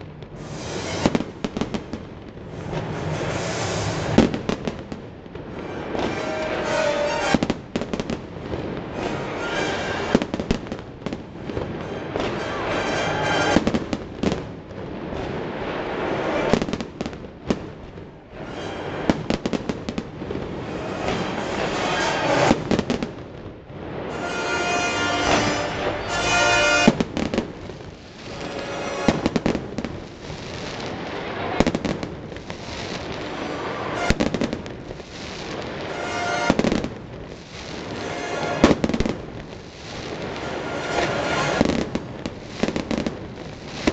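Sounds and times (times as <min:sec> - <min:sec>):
fireworks bursting and crackling: 0:00.0 - 0:43.9.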